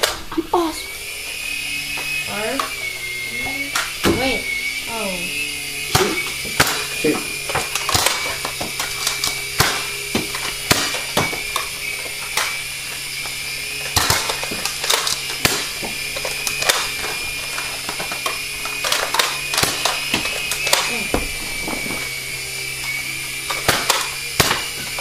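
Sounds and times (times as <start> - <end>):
toy blasters clicking: 0.0 - 0.6, 1.3 - 5.2, 5.8 - 21.3, 22.6 - 25.0
toy helicopter whining: 0.0 - 25.0
darts striking: 5.9 - 6.9, 9.5 - 11.4, 23.6 - 24.9.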